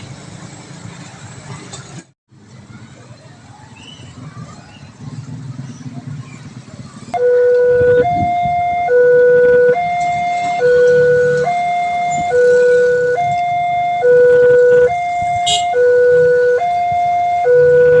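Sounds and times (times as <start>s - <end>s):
two-tone level crossing alarm: 7.2s - 18.0s.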